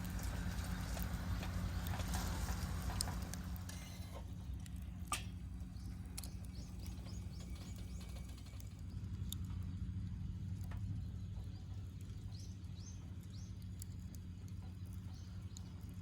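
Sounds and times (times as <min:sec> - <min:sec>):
wood fire crackling and popping: 0:00.0 - 0:16.0
small bird chirping: 0:05.7 - 0:09.1.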